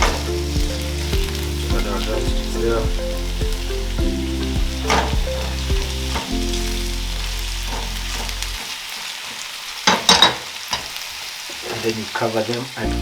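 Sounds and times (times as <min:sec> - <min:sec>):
chicken sizzling in a pan: 0:00.0 - 0:13.0.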